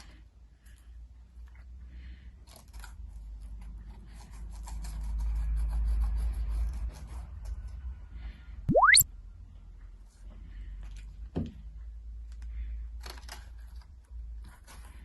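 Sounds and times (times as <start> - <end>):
upward sweeping whistle tone: 8.7 - 9.0.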